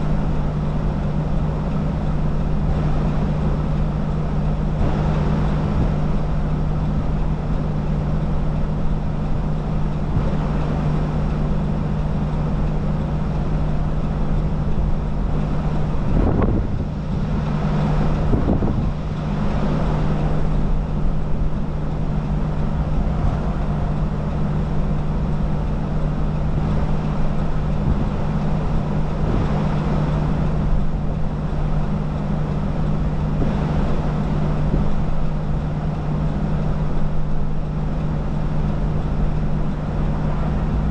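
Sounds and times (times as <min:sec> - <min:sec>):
steady low hum: 0:00.0 - 0:40.9
wind rushing over microphone: 0:04.3 - 0:07.8, 0:14.9 - 0:40.9.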